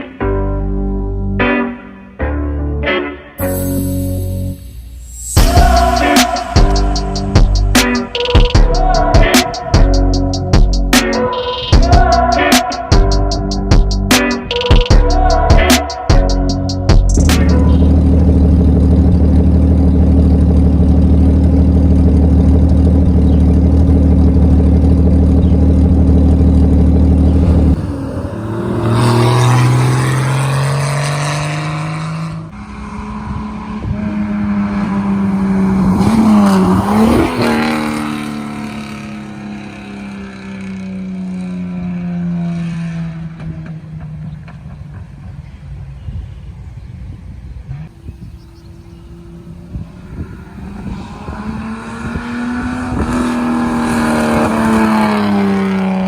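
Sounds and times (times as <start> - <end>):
car engine accelerating past: 25.0 - 45.3, 47.7 - 56.0.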